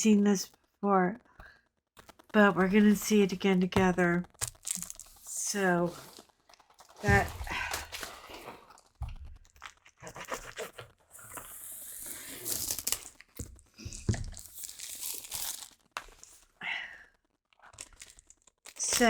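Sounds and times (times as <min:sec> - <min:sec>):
packaging rustling and tearing: 0:01.4 - 0:03.1, 0:03.7 - 0:16.6, 0:17.5 - 0:19.0.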